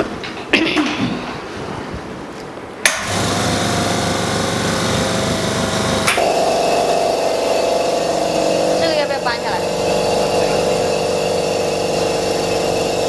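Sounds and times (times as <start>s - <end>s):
electric pump motor humming: 2.8s - 13.0s.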